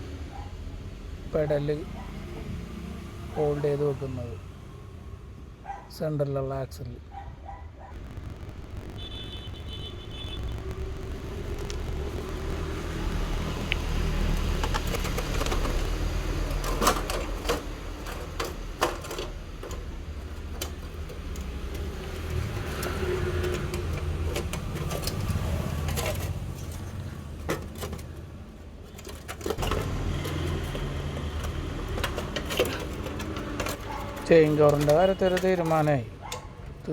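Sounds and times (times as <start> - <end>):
steady low rumble: 8.0 - 15.0.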